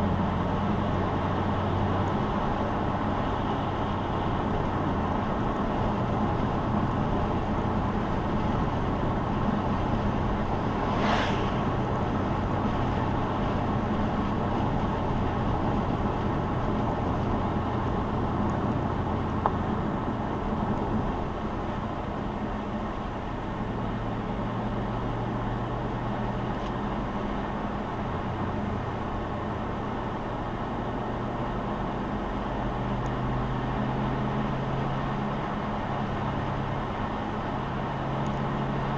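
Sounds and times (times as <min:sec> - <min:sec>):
car engine drone: 0:00.0 - 0:38.9
road and tyre noise: 0:00.0 - 0:38.9
brief rush of noise: 0:10.6 - 0:12.1.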